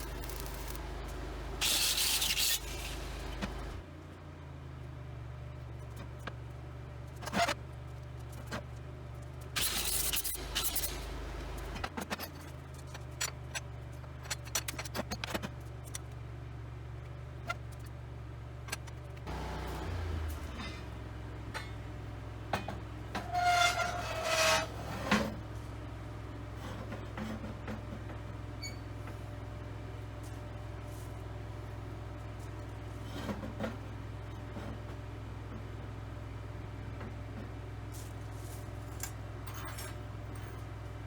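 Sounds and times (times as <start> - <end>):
scrap metal clanking and scraping: 0.0 - 3.8, 19.3 - 21.9, 22.5 - 25.6, 26.5 - 29.2, 32.9 - 33.9, 37.9 - 40.8
low motor hum: 0.0 - 3.9, 19.1 - 38.6.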